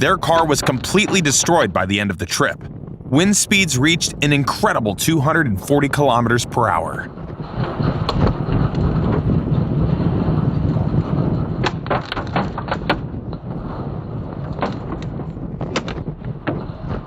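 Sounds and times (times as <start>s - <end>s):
storm wind buffeting car: 0.0s - 17.0s
objects knocking against car: 11.6s - 13.1s, 14.5s - 16.9s.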